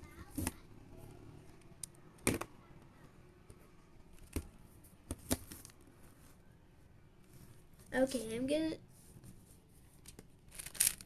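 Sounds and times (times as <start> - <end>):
puzzle cube plastic clicks: 10.1 - 11.0.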